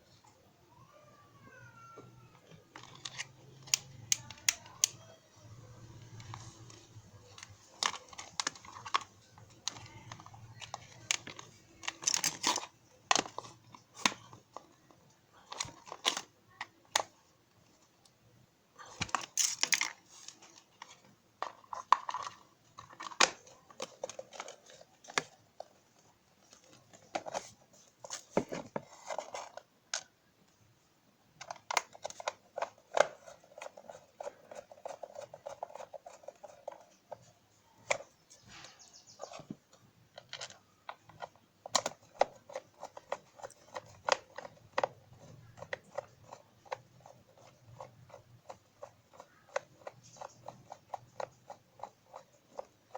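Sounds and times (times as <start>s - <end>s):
tools clicking and tapping: 2.8s - 5.1s.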